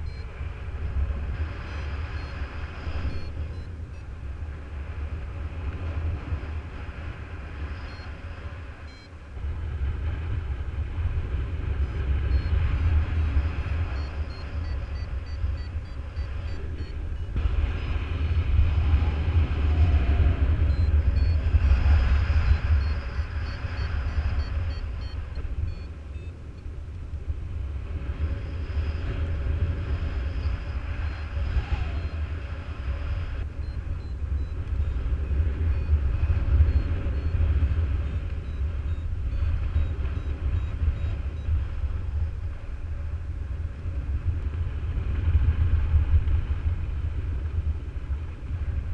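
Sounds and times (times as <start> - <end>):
variometer beeping: 0.0 - 0.7, 1.7 - 4.3, 7.7 - 9.2, 11.8 - 17.4, 20.5 - 27.3, 30.0 - 41.8
wind rushing over microphone: 0.0 - 48.9.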